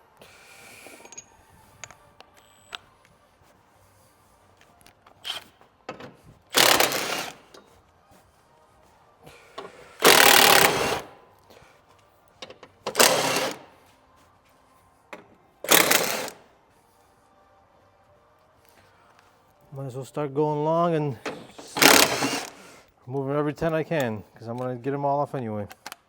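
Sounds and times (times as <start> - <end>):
impact gun bursts: 6.5 - 7.4, 10.0 - 11.1, 15.7 - 16.4, 21.8 - 22.6.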